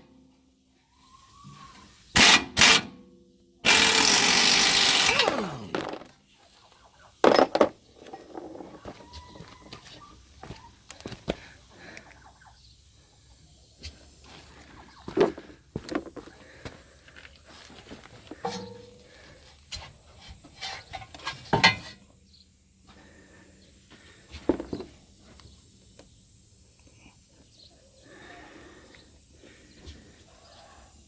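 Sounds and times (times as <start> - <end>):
tools and metal parts clanking: 5.6 - 6.2, 7.2 - 9.0, 18.4 - 19.0.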